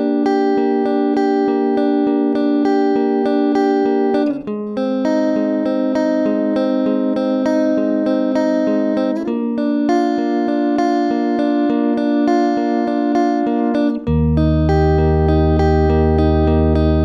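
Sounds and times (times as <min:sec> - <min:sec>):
electric guitar chords: 0:00.0 - 0:17.0
low bass line: 0:14.1 - 0:17.0.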